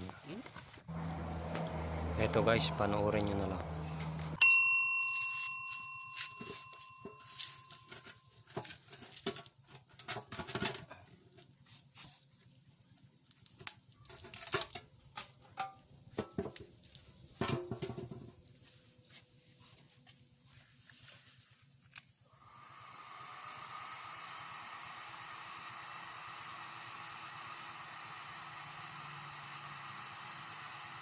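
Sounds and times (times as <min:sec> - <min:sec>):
sharp metallic clang: 0:04.4 - 0:07.8
tools knocking and scraping metal: 0:05.3 - 0:10.8.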